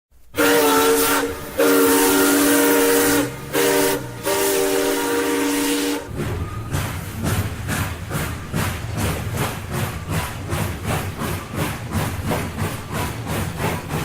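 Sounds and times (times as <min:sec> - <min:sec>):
steam locomotive whistle blasts: 0:00.4 - 0:06.9.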